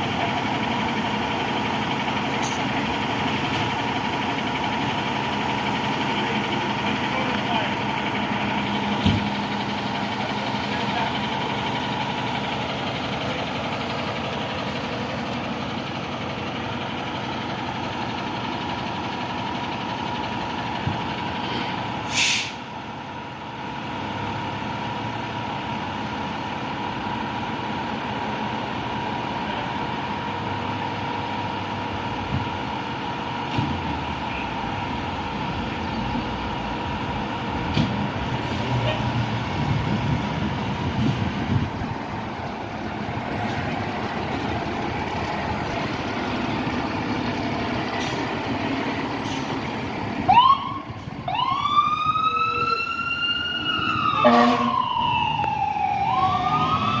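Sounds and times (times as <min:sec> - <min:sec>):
diesel engine running: 0:00.0 - 0:57.0
air brakes hissing: 0:21.4 - 0:22.7, 0:38.4 - 0:39.0, 0:47.9 - 0:48.4, 0:49.1 - 0:49.8.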